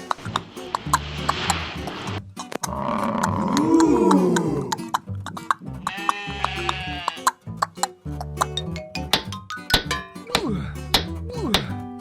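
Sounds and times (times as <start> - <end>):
background music with steady beat: 7.5 - 12.0.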